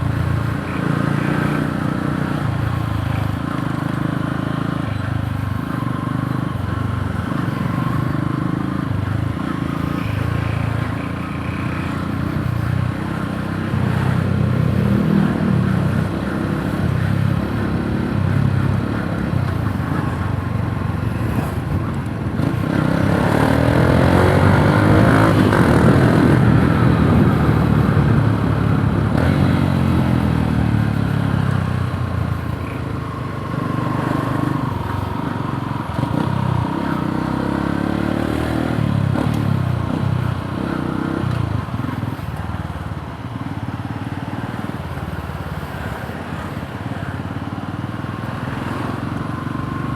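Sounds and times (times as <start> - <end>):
motorcycle engine revving: 7.0 - 42.2.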